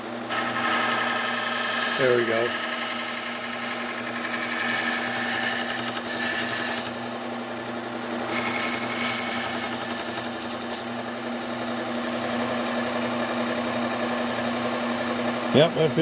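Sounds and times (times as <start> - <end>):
steel grinding on sander belt: 0.3 - 6.9, 8.3 - 10.9.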